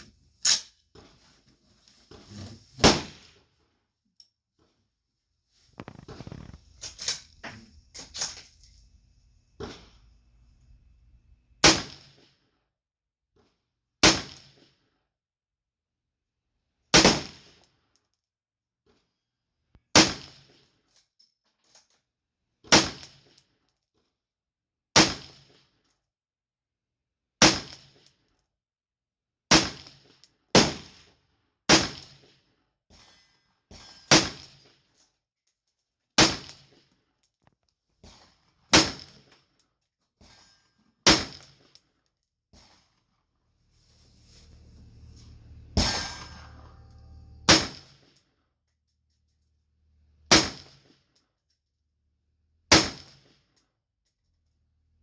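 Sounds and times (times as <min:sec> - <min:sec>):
rifle gunshots: 0:11.6 - 0:12.0, 0:45.6 - 0:47.9.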